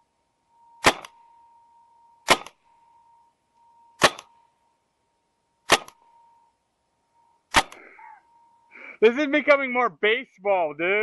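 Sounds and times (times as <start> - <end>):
faint steady high tone: 0.0 - 11.0
paintball marker shots: 0.8 - 1.2, 2.2 - 2.6, 4.0 - 4.4, 5.6 - 6.0, 7.5 - 7.9.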